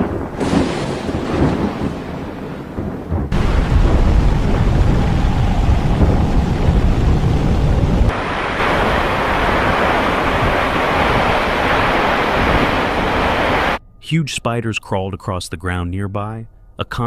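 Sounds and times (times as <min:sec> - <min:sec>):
wind buffeting microphone: 0:02.8 - 0:13.8
loud hiss of storm wind: 0:03.3 - 0:13.8.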